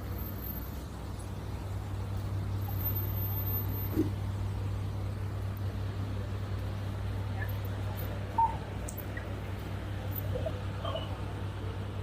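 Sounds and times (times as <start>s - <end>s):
street noise: 0.0s - 12.0s
vehicle engine idling: 0.0s - 12.0s.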